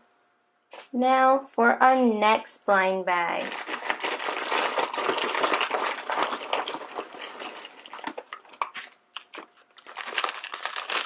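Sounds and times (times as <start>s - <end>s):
plastic packets rustling and crinkling: 3.4s - 11.0s.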